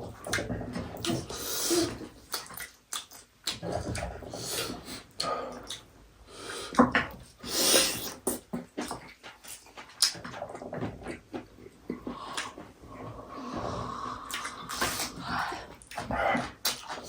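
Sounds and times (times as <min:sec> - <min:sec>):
lip smacks: 0:00.2 - 0:05.9, 0:14.2 - 0:17.0
person slurping soup: 0:07.4 - 0:08.4.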